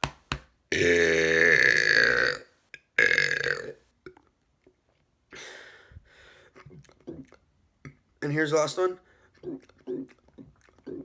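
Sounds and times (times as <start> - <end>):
man burping loudly: 0.7 - 3.8
faint breathy noise: 5.3 - 6.7.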